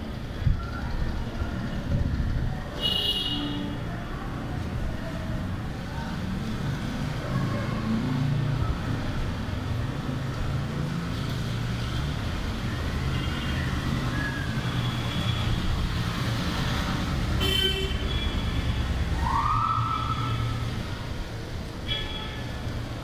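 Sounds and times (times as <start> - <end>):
traffic rumble: 0.0 - 23.0
vehicle horn: 17.4 - 18.4.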